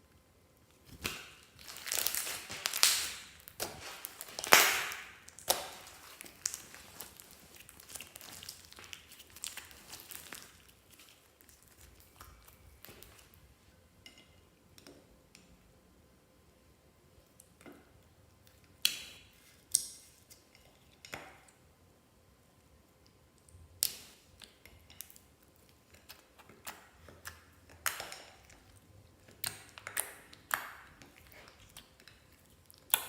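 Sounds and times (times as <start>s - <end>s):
slime crackling and popping: 0.8s - 13.4s, 29.4s - 33.0s.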